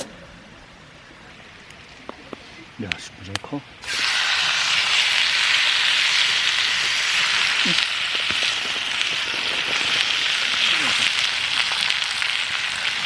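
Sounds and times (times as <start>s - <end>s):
meat sizzling on a grill: 3.8s - 13.0s.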